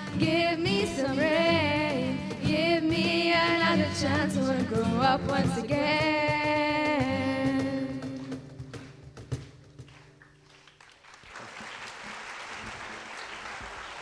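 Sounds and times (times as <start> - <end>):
audience applauding: 9.8 - 14.0.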